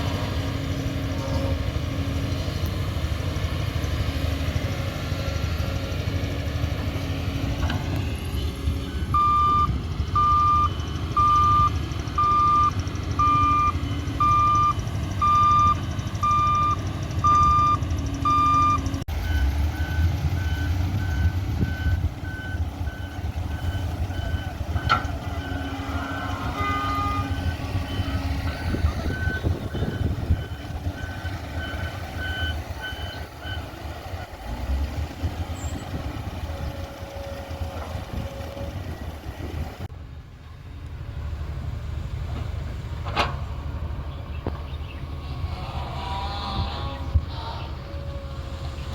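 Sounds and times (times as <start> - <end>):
heavy diesel engine running: 0.0 - 48.9
back-up alarm beeping: 9.0 - 33.7.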